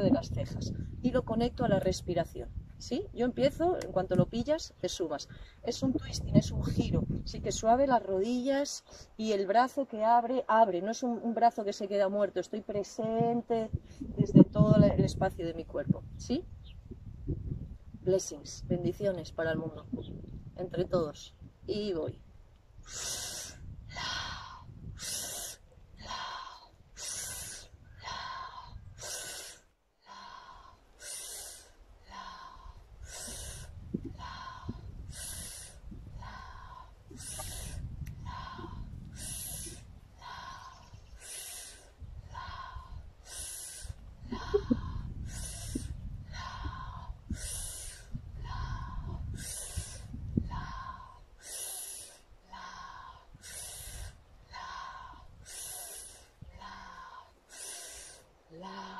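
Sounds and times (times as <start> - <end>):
person breathing hard: 22.8 - 58.9.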